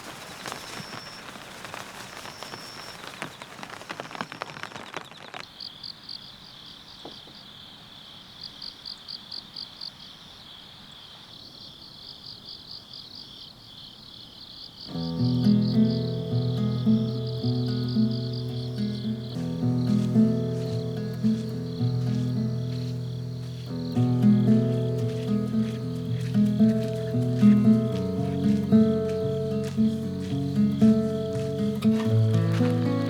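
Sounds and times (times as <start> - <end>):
rain falling: 0.0 - 5.6, 14.9 - 33.0
insects chirping in trills: 0.0 - 33.0.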